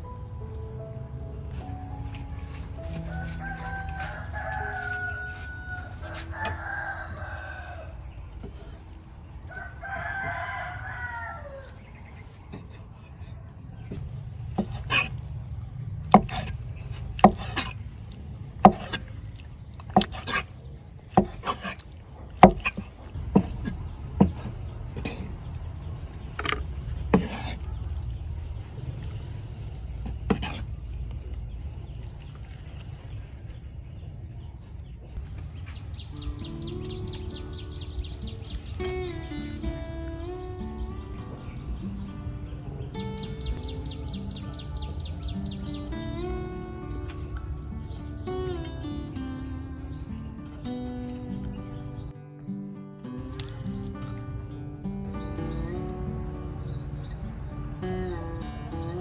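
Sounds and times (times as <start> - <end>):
rooster crowing: 2.8 - 8.2, 9.4 - 11.9
sharp knocks: 22.4 - 25.3.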